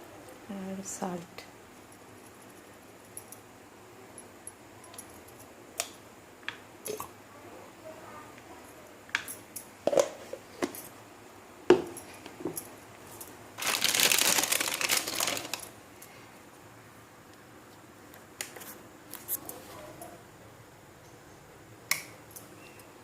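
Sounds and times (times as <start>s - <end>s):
noisy rustling: 13.0s - 16.6s.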